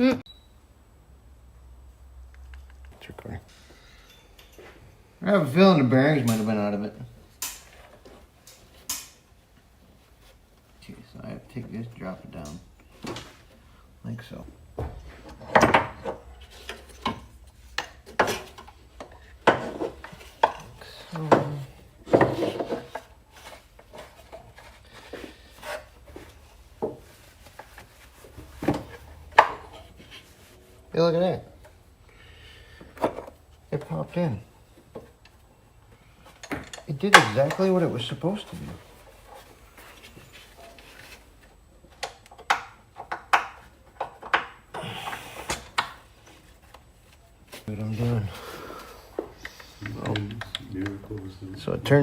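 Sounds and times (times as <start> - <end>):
metal parts and tools clunking: 3.5 - 4.9.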